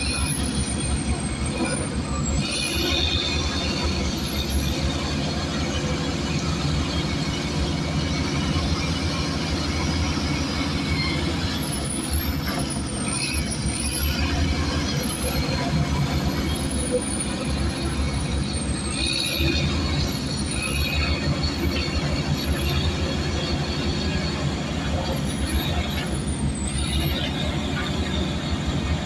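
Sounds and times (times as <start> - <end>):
diesel machinery engines rumbling: 0.0 - 29.0
metallic squeaks of steel tracks: 0.0 - 29.0.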